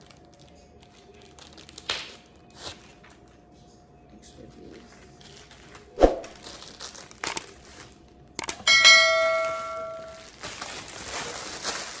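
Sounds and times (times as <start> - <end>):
small clicks: 8.4 - 8.6
bell ring: 8.7 - 10.2.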